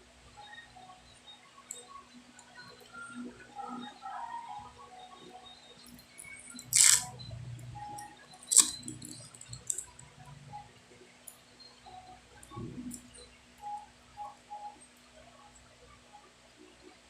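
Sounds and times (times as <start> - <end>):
sharp clicks: 8.0 - 9.9.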